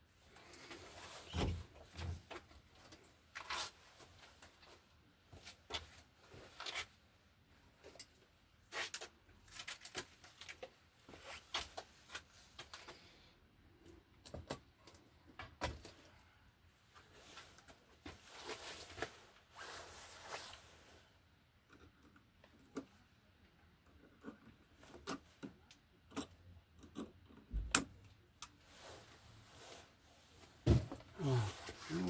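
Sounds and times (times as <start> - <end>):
hands handling wires: 7.8 - 13.0.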